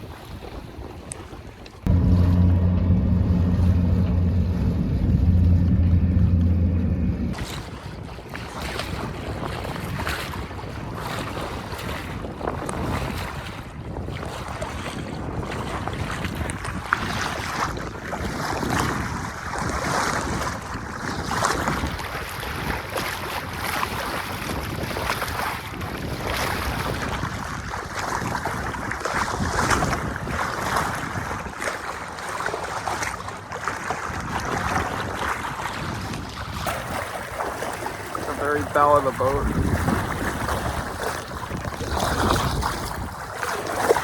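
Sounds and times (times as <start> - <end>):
water washing along hull: 0.0 - 44.0
wind buffeting microphone: 1.9 - 7.8, 34.1 - 44.0.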